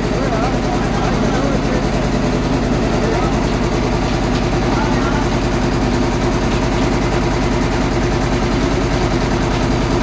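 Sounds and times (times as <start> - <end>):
stationary engine running: 0.0 - 10.0.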